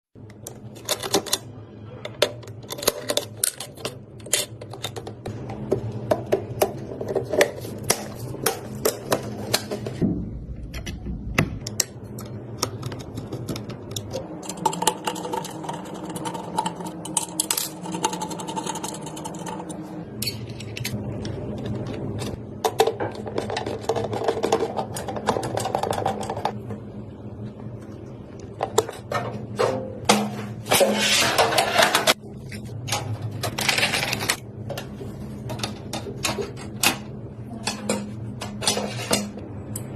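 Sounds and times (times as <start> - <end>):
steady low hum: 0.2 - 39.9
computer parts clicking and clattering: 0.4 - 10.0, 10.6 - 26.6, 32.8 - 34.4.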